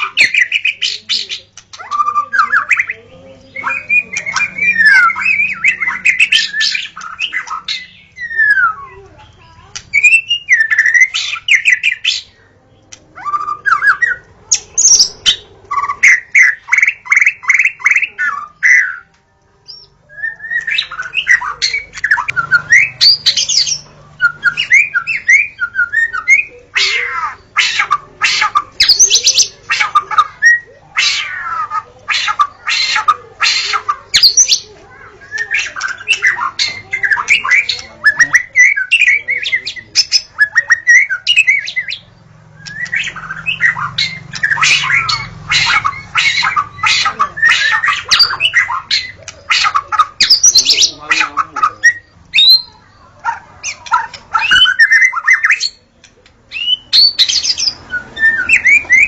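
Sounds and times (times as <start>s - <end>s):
bird singing whistles and trills: 0.0s - 9.1s, 9.9s - 12.4s, 19.7s - 31.6s, 32.2s - 52.8s, 53.6s - 55.8s, 56.5s - 59.0s.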